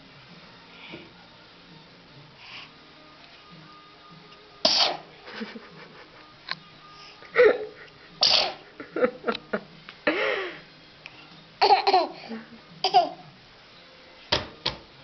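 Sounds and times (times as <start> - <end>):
person sneezing: 4.7 - 5.1, 8.2 - 8.6
laughter: 5.2 - 6.4, 7.4 - 10.2.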